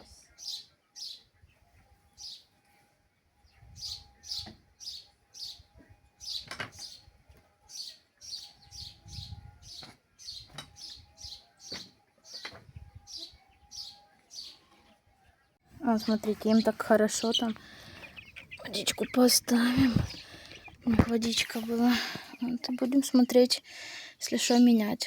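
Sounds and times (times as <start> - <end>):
chicks peeping: 3.6 - 15.0, 15.8 - 23.6.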